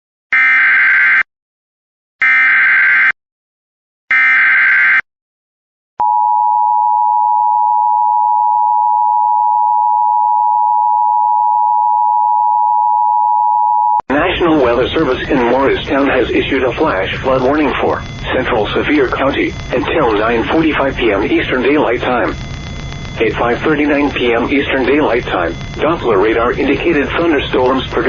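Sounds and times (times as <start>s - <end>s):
steady two-tone alert signal: 6.0s - 28.0s
screeching digital data bursts: 14.4s - 28.0s.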